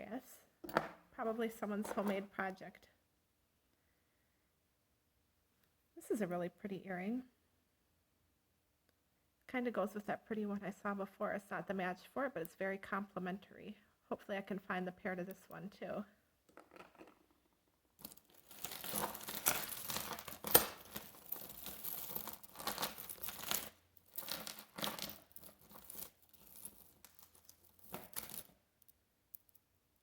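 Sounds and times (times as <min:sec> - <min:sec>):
jewelry rustling in a bag: 0:18.0 - 0:29.6.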